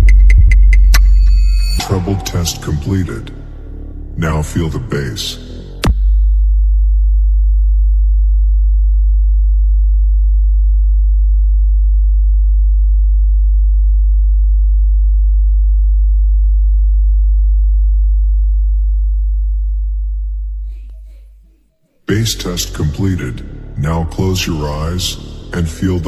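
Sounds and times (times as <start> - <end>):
deep sine test tone: 0.0 - 4.2, 5.8 - 20.7.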